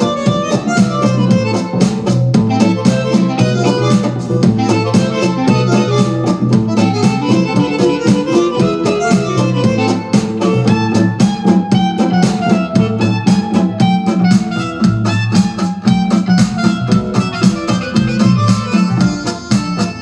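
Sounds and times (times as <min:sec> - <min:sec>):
loud music with quick beat: 0:00.0 - 0:20.0.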